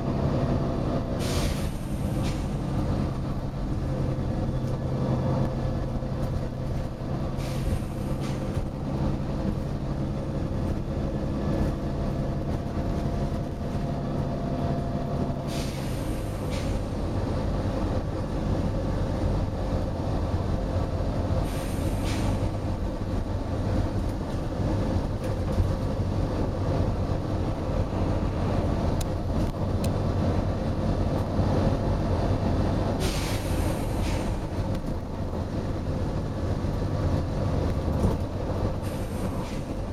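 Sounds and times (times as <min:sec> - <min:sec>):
bus engine running: 0:00.0 - 0:39.9
compressed air hisses: 0:01.2 - 0:02.8, 0:07.4 - 0:08.6, 0:15.4 - 0:17.0, 0:21.4 - 0:22.7, 0:33.0 - 0:34.6, 0:38.8 - 0:39.9.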